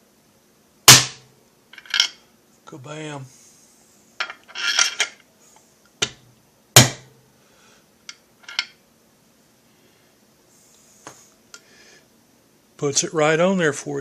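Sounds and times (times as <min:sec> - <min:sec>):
metal parts clattering: 0:01.8 - 0:02.2, 0:04.2 - 0:05.2.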